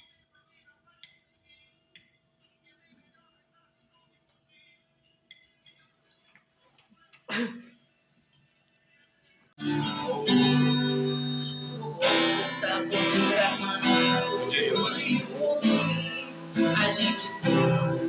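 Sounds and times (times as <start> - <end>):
plucked guitar music: 9.6 - 18.0.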